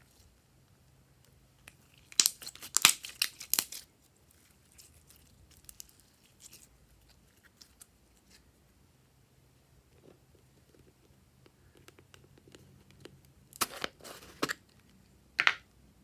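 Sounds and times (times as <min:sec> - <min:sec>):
slime crackling and popping: 0:01.7 - 0:03.9, 0:04.6 - 0:07.8.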